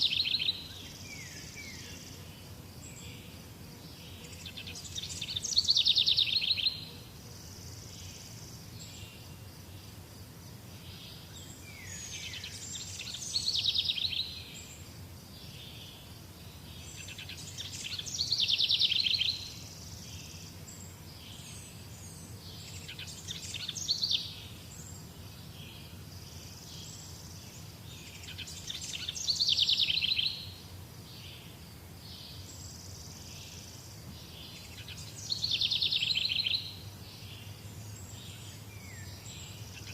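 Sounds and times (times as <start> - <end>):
songbird trilling: 0.0 - 1.9, 4.4 - 6.9, 11.7 - 14.7, 16.9 - 19.6, 28.1 - 30.6, 34.2 - 37.5
bird chirps: 25.7 - 30.6, 32.2 - 39.9.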